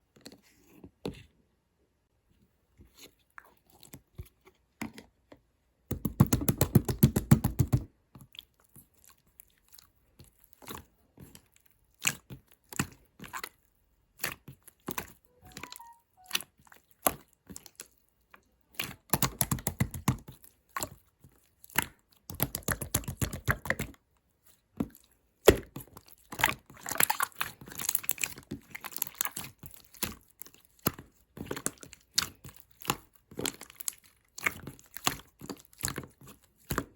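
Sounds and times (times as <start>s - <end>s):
chewing and crunching food: 8.2s - 15.3s, 16.4s - 36.9s.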